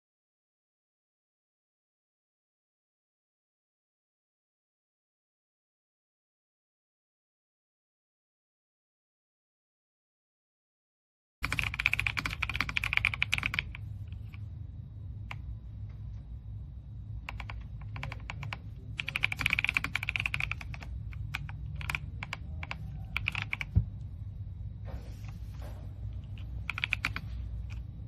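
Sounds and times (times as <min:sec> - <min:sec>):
mechanical keyboard typing: 0:11.4 - 0:14.4, 0:17.2 - 0:23.8, 0:26.2 - 0:27.8.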